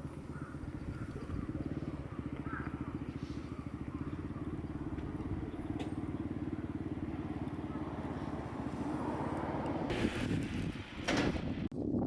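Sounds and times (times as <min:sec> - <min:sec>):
engine idling: 0:00.0 - 0:08.9.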